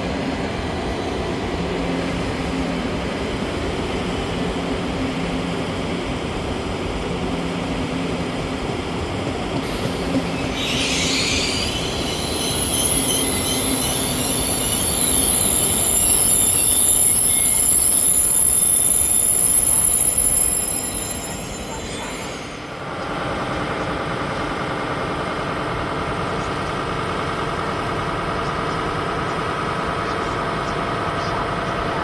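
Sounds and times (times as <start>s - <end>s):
train wheel squeal: 9.6s - 23.0s.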